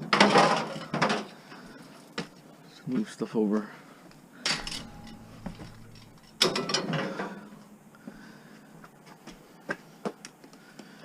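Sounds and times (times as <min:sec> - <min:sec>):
scrap metal clattering: 0:04.5 - 0:07.6.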